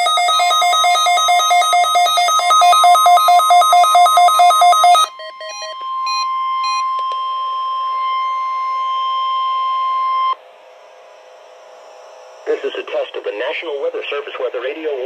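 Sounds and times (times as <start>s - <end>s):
two-tone beeping: 0.0s - 10.4s
steady warning alarm tone: 0.0s - 11.2s
radio hiss: 12.4s - 15.0s.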